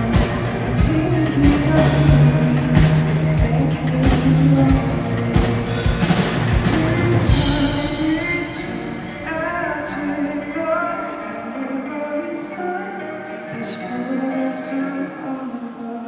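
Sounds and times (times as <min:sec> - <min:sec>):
drum kit: 0:00.0 - 0:10.1
live band music: 0:00.0 - 0:10.2
person singing: 0:00.0 - 0:16.0.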